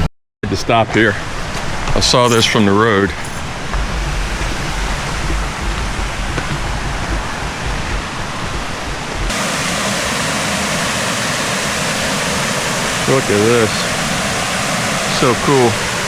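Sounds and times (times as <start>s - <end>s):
low rumble: 3.1s - 9.4s
waterfall rushing: 3.5s - 16.0s.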